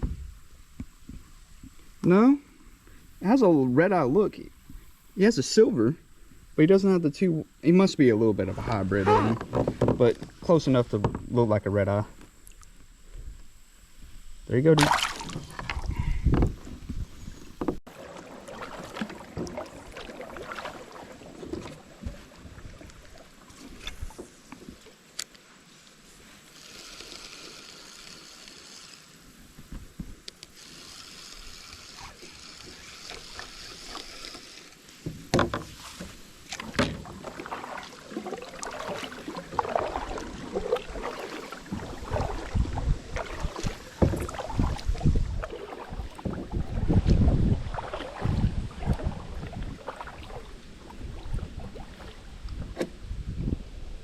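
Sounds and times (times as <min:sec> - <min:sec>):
knocks against kayak hull: 0:09.1 - 0:10.3, 0:35.0 - 0:37.2, 0:43.2 - 0:45.1
water splashes: 0:14.5 - 0:25.1, 0:30.5 - 0:53.0.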